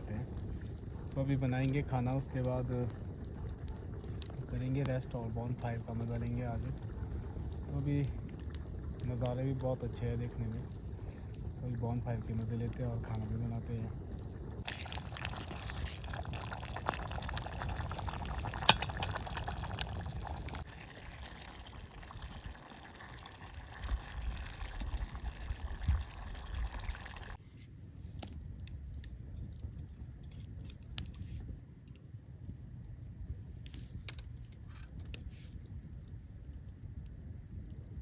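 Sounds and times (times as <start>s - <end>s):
campfire crackling and popping: 0.0s - 38.0s
food sizzling: 14.6s - 24.2s.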